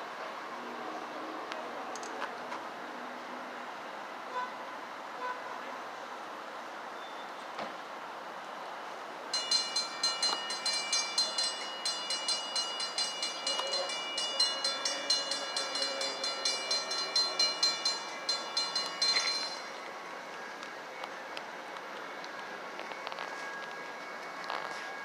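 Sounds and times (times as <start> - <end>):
railroad crossing bells ringing: 9.3 - 20.9.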